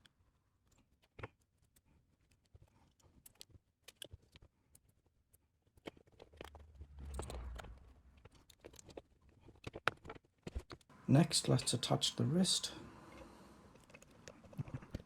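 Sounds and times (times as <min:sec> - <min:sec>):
low rubbing handling noise: 0:06.5 - 0:08.3.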